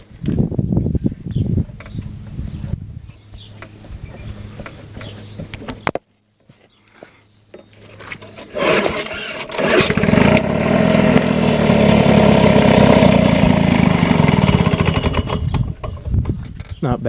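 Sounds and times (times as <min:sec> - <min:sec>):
mower engine starting and running: 0:07.7 - 0:16.4.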